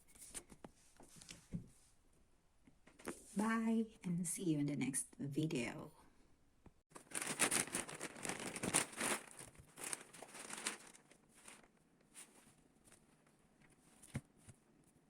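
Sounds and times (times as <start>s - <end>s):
crinkling rustling handling noise: 6.9s - 14.7s.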